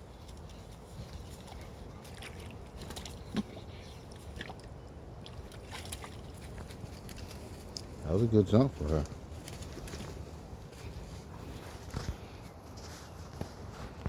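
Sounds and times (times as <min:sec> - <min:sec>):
dogs splashing through water: 0:00.0 - 0:08.2.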